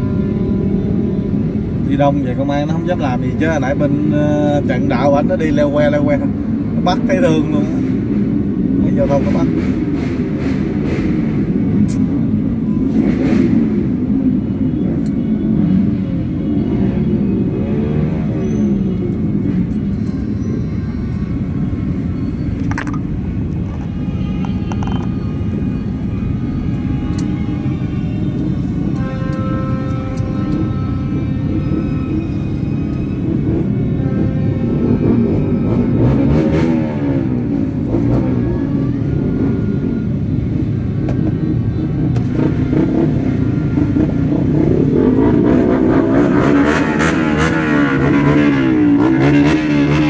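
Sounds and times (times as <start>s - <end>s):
motorbike engines rumbling: 0.0s - 50.0s
horn toots: 23.8s - 38.0s.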